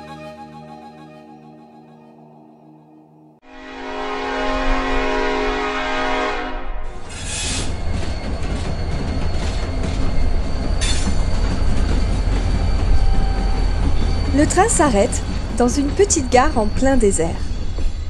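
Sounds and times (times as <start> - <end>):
train horn blast: 1.3 - 7.6
low rumble of moving train: 3.5 - 18.0.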